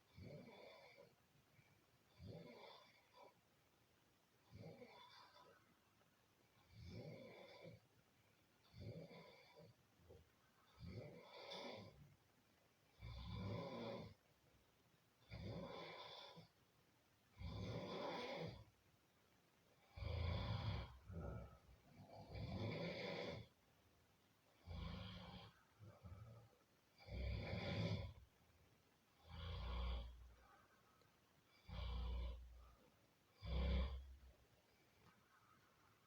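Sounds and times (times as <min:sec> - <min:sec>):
person snoring: 0:15.3 - 0:16.5, 0:17.4 - 0:18.6, 0:19.9 - 0:23.5, 0:24.6 - 0:28.2, 0:31.6 - 0:32.7, 0:33.3 - 0:34.1.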